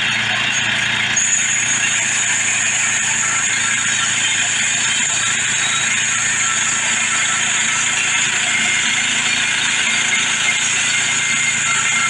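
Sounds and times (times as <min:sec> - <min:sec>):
gas engine running: 0:00.0 - 0:12.0
band saw cutting log: 0:00.6 - 0:12.0.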